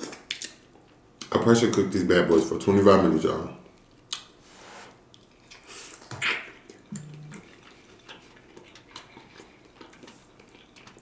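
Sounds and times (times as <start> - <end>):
low hum: 6.9 - 7.6.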